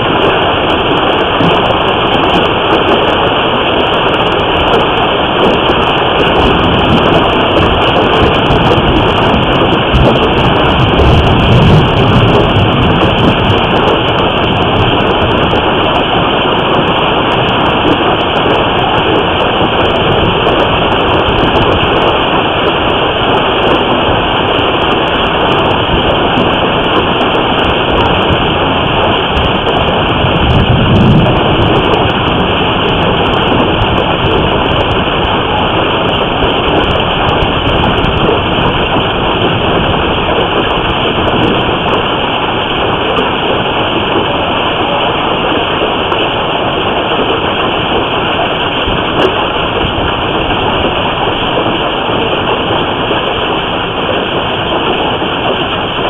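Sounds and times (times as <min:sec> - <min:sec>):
low rumble: 0:00.0 - 0:54.1
hail and heavy rain pelting: 0:00.0 - 0:56.0.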